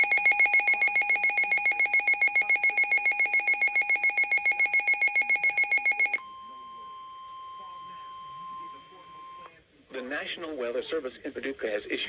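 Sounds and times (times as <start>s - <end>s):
rapid two-tone alarm beeping: 0.0s - 6.2s.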